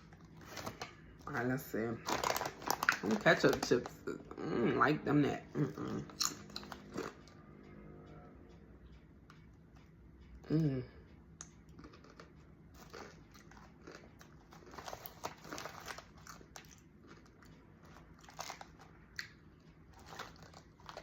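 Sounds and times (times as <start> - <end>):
chewing crisp chips: 0.1 - 4.4, 5.3 - 7.4, 11.4 - 21.0.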